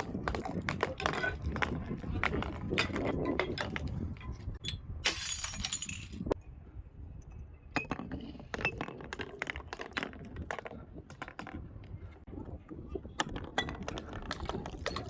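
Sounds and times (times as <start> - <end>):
glass shattering: 5.0 - 6.4
glass pieces crunching and clinking: 5.1 - 6.4.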